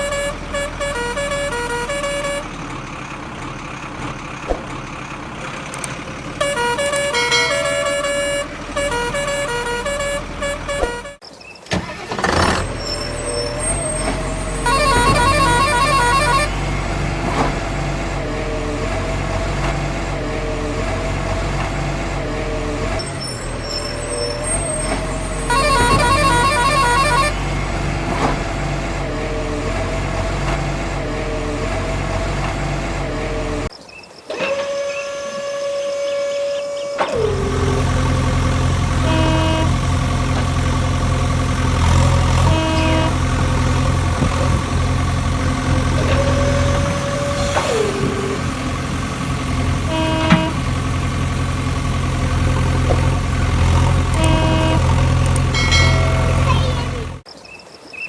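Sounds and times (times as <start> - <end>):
horn honking: 0.0 - 2.6, 6.4 - 33.7, 34.3 - 57.2
toy truck engine drone: 0.0 - 3.9, 4.9 - 57.2
electronic beeps: 34.2 - 37.8.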